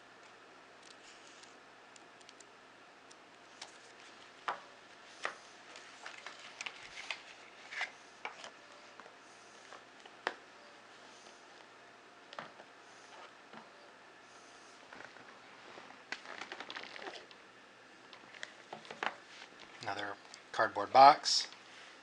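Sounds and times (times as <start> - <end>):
paper and cardboard rustling: 5.2 - 8.5.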